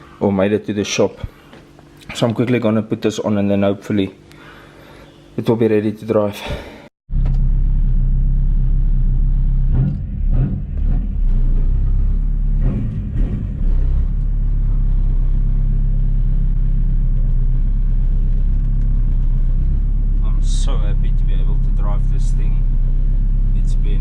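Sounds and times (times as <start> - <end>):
diesel engine idling: 13.9 - 24.0.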